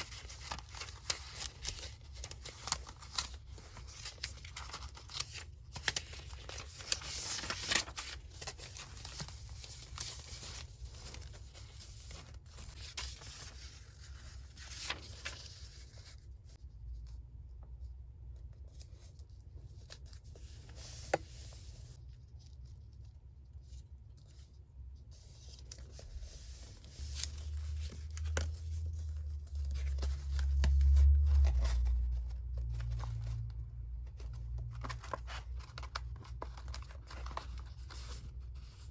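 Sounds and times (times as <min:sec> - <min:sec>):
paper tearing and rustling: 0:00.0 - 0:16.1, 0:34.2 - 0:38.9
deep low rumble: 0:28.4 - 0:34.9.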